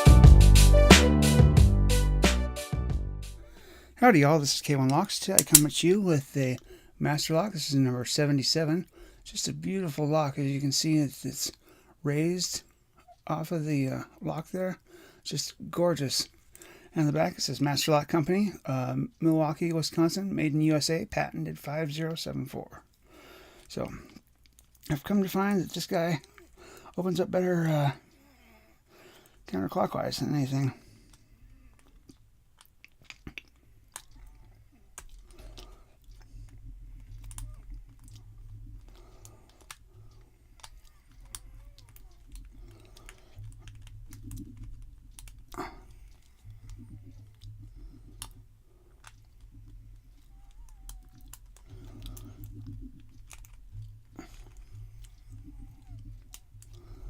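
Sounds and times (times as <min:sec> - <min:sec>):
lock pick clicking and scratching: 0:04.9 - 0:05.8, 0:31.0 - 0:57.0.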